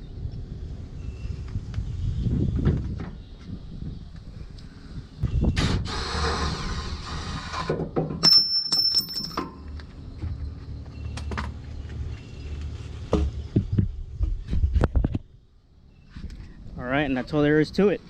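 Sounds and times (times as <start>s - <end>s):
metal clunks and knocks: 7.7s - 9.6s.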